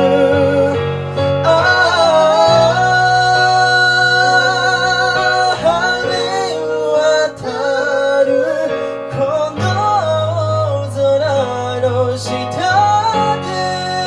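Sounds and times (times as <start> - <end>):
guitar accompaniment: 0.0 - 14.0
person singing live: 0.0 - 14.0.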